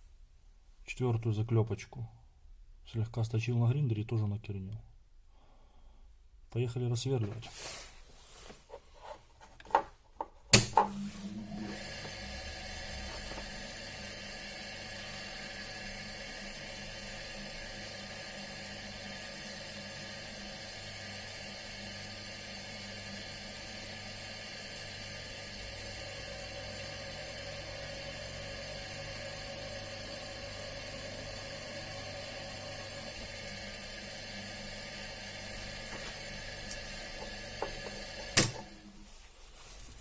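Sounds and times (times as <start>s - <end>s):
electric drill running: 24.9s - 38.9s.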